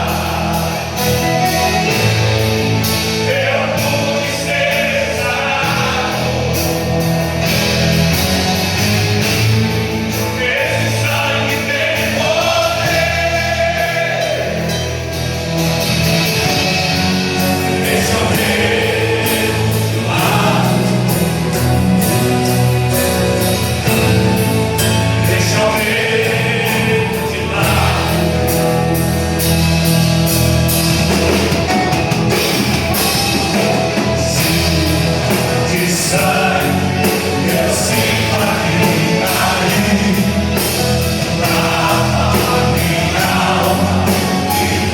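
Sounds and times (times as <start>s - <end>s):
band playing rock song: 0.0s - 44.9s
steady drum beat: 0.0s - 44.9s
voices singing: 0.0s - 44.9s.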